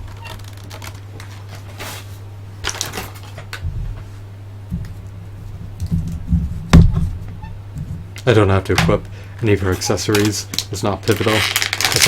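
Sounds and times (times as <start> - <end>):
low electrical hum: 0.0 - 12.0
rustles of card and plastic packaging: 9.4 - 12.0.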